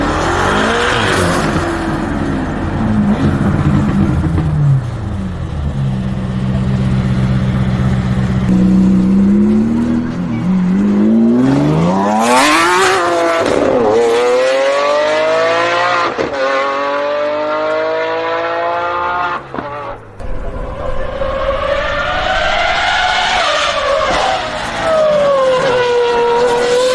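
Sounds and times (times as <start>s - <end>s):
car engine revving: 6.0s - 26.9s.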